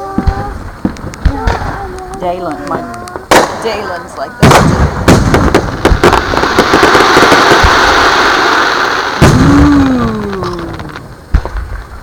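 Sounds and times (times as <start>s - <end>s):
fireworks crackling: 0.0s - 12.0s
loud firework bang: 3.3s - 12.0s.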